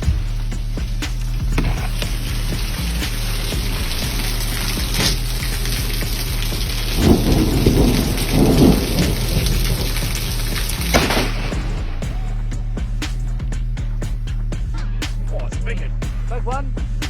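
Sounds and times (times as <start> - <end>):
steady rain falling: 0.0 - 13.8
rolling thunder rumble: 1.7 - 14.0.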